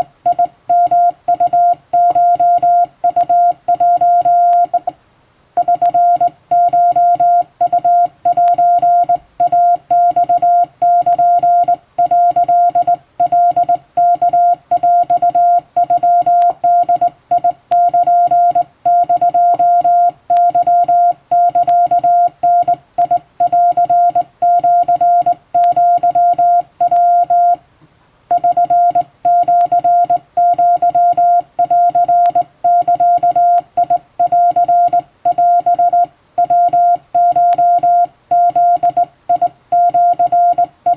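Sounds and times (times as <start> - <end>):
morse code tone: 0.0 - 4.9, 5.6 - 27.6, 28.3 - 40.9.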